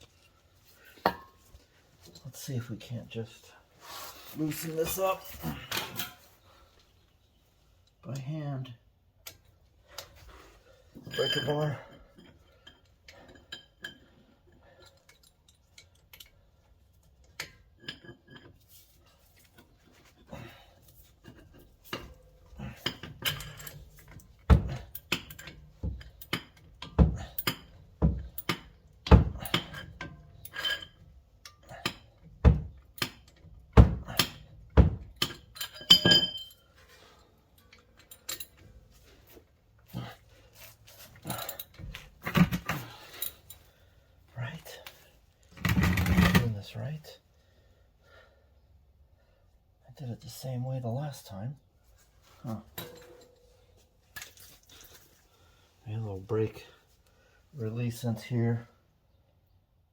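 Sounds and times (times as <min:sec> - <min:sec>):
metal tools clinking: 0:11.0 - 0:16.4, 0:17.0 - 0:32.2, 0:34.1 - 0:39.3, 0:40.0 - 0:43.7, 0:52.4 - 0:55.1.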